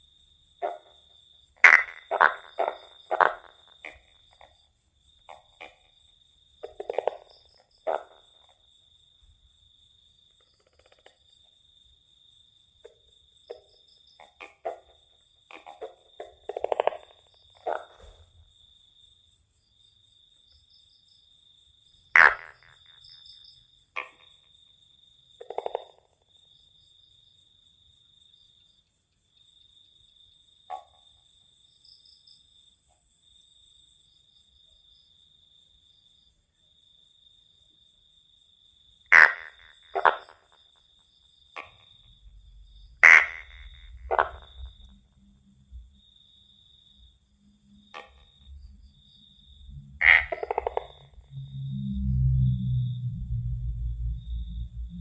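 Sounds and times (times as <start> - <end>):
tree frogs rattling croaks: 0.6 - 8.8, 9.7 - 11.8, 12.8 - 18.8, 22.1 - 24.5, 25.3 - 26.4, 39.0 - 51.4
high insect trill: 40.3 - 55.0.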